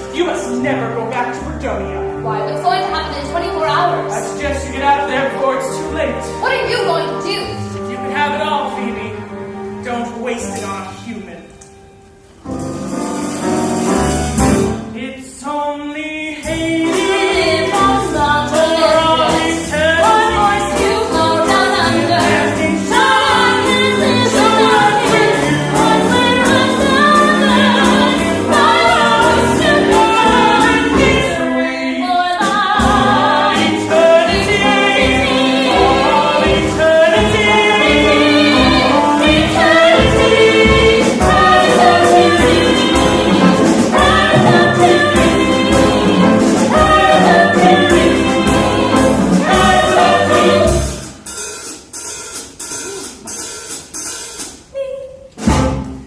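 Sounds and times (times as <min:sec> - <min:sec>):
voices singing together: 0:15.6 - 0:51.2
live pit band: 0:32.4 - 0:56.0.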